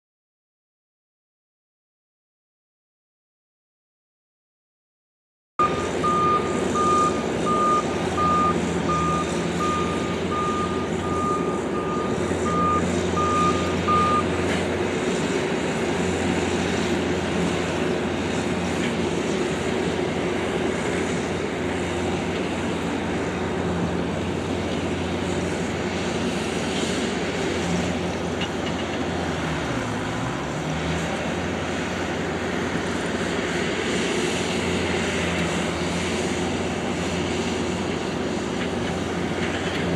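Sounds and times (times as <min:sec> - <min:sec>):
reversing alarm beeping: 0:05.6 - 0:14.4
diesel engine running: 0:05.6 - 0:39.9.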